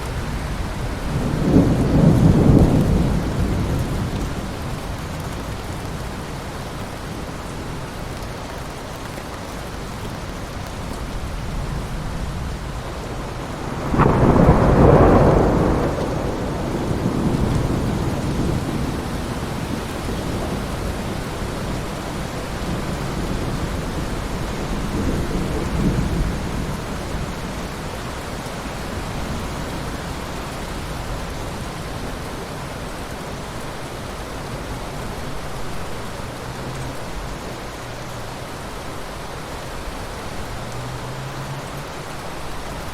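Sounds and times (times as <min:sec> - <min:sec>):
heavy rain: 0:00.0 - 0:42.9
thunder rolling: 0:00.6 - 0:04.9, 0:13.3 - 0:27.6.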